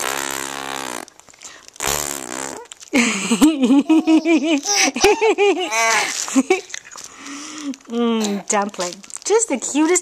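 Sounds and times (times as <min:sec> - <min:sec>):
buzzy fart-like vocal noise: 0:00.0 - 0:01.1, 0:01.8 - 0:02.7
high-pitched laugh-like syllables: 0:03.0 - 0:06.6.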